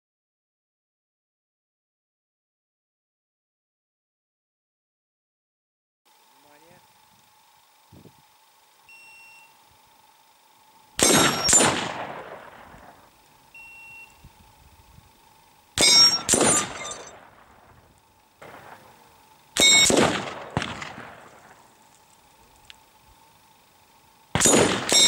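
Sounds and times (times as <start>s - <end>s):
rifle shots: 11.0s - 13.0s, 15.8s - 17.7s, 18.4s - 21.7s, 24.3s - 25.0s
metallic clang of steel target: 15.8s - 17.2s.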